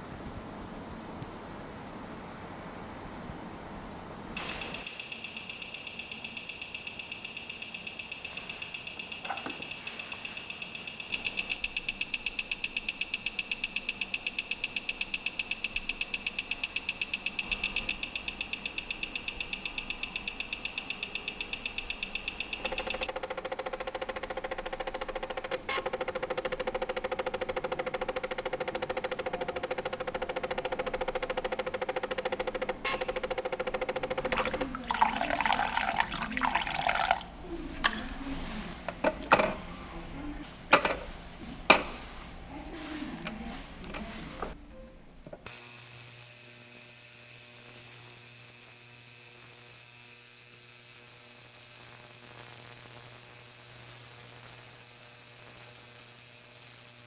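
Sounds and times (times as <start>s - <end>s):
watch ticking: 0.0s - 23.1s.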